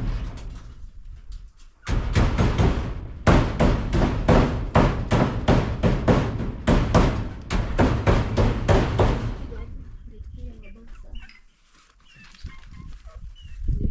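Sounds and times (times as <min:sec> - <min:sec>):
hammering: 0:01.8 - 0:09.6.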